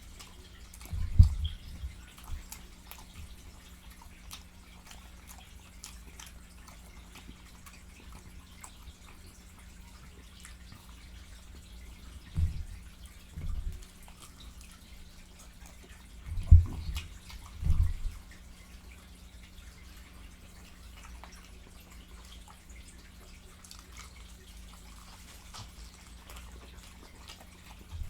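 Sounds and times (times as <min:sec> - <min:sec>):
person chewing food: 0:00.0 - 0:18.4, 0:23.5 - 0:28.0
dull low thumps: 0:16.3 - 0:17.0.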